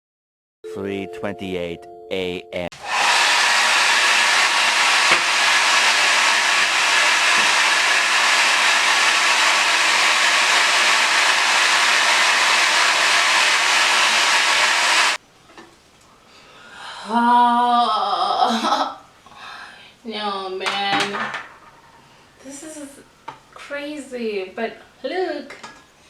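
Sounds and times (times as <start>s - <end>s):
hair dryer blowing: 2.7s - 15.2s.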